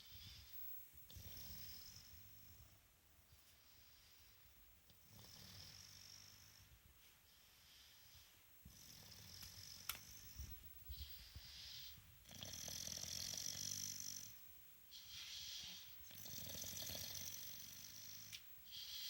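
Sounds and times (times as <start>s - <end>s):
dog snoring: 1.1s - 2.7s, 4.9s - 6.7s, 7.7s - 19.0s.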